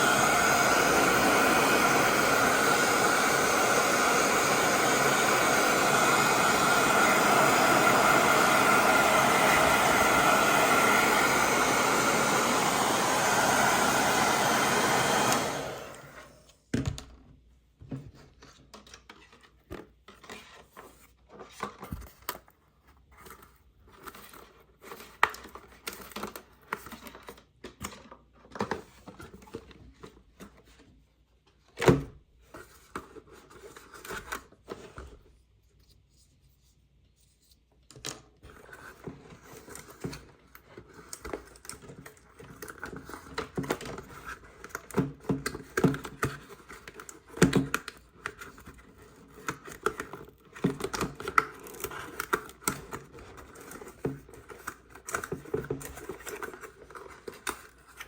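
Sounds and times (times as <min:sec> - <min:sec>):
hair dryer blowing: 0:00.0 - 0:16.5.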